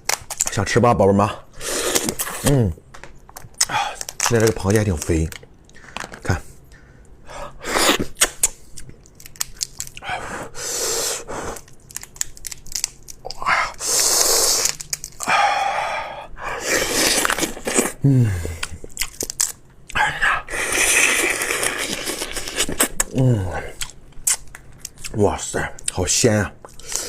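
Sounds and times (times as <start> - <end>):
crab shell cracking: 2.9 - 6.3, 8.0 - 10.0, 11.6 - 13.8, 14.5 - 15.3, 17.1 - 19.7, 23.8 - 25.1
crunching and chewing: 7.7 - 10.5, 11.4 - 15.5, 16.6 - 25.2.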